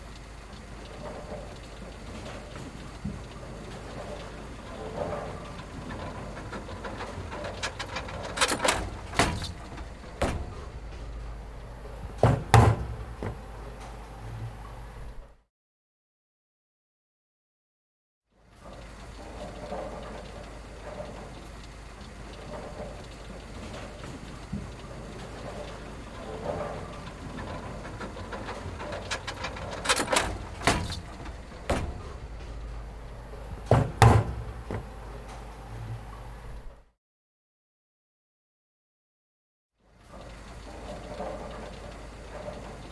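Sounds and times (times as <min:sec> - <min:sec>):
steady low hum: 0:03.2 - 0:15.4, 0:24.8 - 0:36.8
sharp knocks and bangs: 0:06.9 - 0:14.0, 0:27.8 - 0:35.5.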